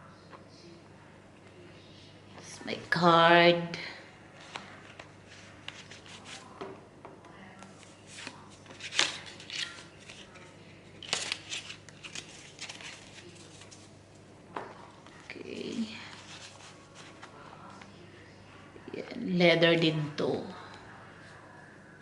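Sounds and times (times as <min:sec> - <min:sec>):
wallet and cards rustling: 0:07.6 - 0:14.0, 0:15.1 - 0:17.8.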